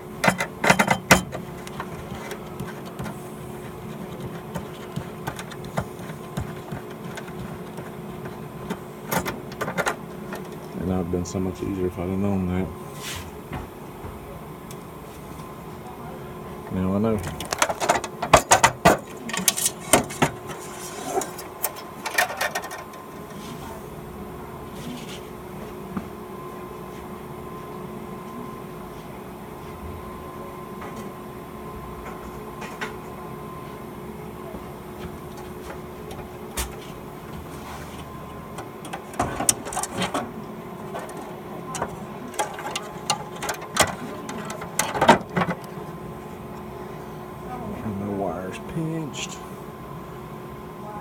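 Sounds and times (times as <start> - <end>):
faint hum: 0.0 - 51.0.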